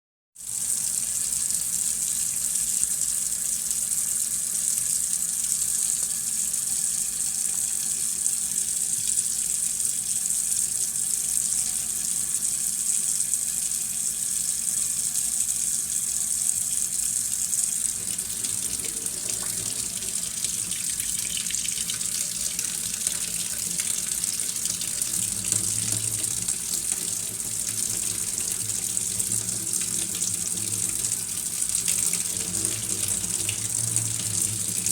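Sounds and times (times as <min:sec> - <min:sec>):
low rumble of water: 0:17.8 - 0:34.9.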